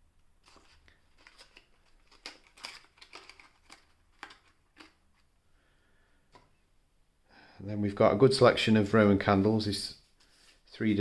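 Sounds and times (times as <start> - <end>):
cardboard packaging clicks and rustles: 0.4 - 5.3.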